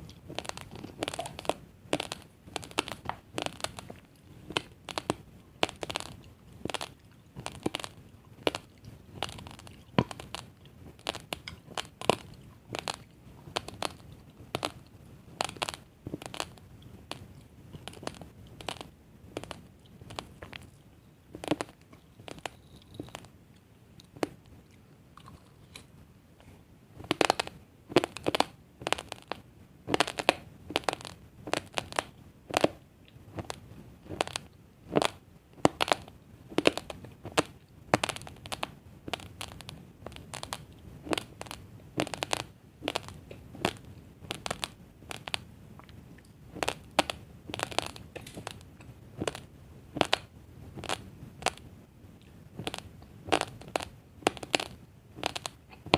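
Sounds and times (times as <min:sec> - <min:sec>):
crunching raw rice grains: 0:00.0 - 0:23.3, 0:27.0 - 0:51.6, 0:52.6 - 0:55.9.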